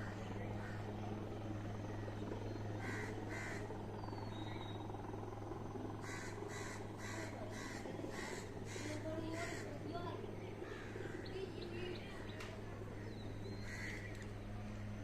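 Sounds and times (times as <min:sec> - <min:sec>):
crows cawing: 0:00.0 - 0:00.9, 0:02.0 - 0:03.8, 0:06.0 - 0:12.3, 0:12.9 - 0:14.2
low mechanical hum: 0:00.0 - 0:15.0.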